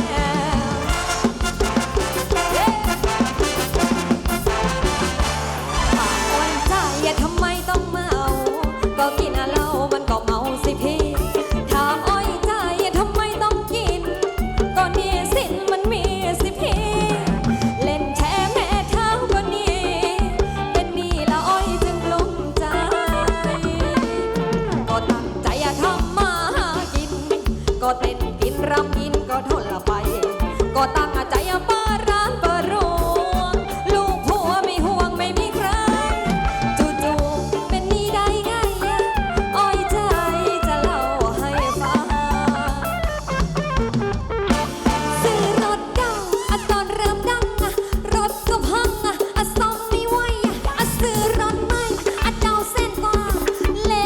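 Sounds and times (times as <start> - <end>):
live band music: 0.0 - 54.0.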